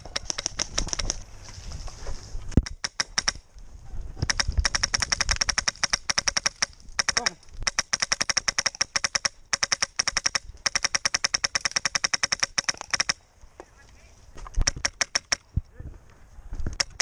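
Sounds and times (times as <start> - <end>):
airsoft guns firing full auto: 4.2 - 13.2.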